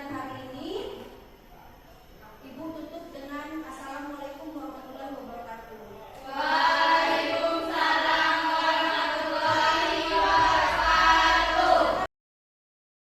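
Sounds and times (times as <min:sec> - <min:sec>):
voices singing held notes: 0:06.2 - 0:12.1.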